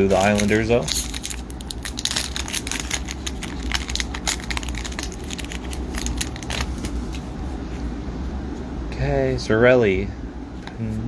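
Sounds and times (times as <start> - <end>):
card pack wrapper crinkling: 0.0 - 7.3
steady low hum: 0.0 - 11.0.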